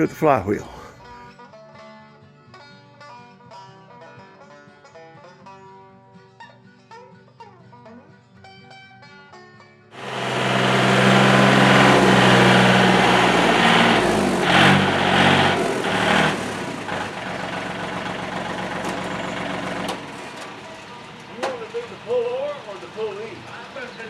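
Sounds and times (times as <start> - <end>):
vehicle engine running: 10.0 - 24.0.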